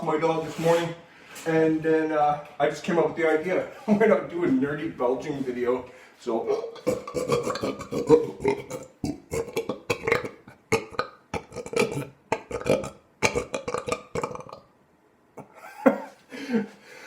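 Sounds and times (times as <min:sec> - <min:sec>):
man belching: 0:06.5 - 0:14.7.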